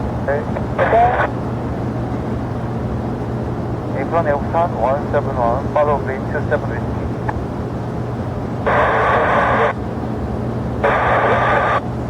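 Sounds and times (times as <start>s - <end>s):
low rumble of aircraft noise: 0.0s - 12.0s
radio static bursts: 0.8s - 1.3s, 8.7s - 9.8s, 10.8s - 11.8s.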